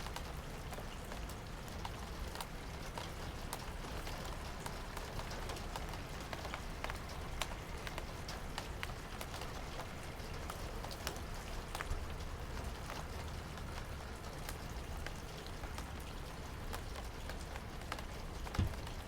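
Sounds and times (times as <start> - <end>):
raindrops ticking: 0.0 - 19.0
steady rain: 0.0 - 19.0
soft low thump: 18.5 - 18.9.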